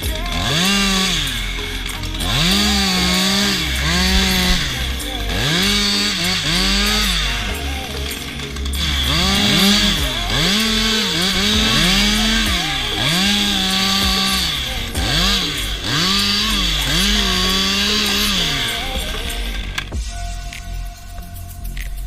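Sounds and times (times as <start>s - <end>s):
chainsaw engine revving: 0.0s - 20.0s.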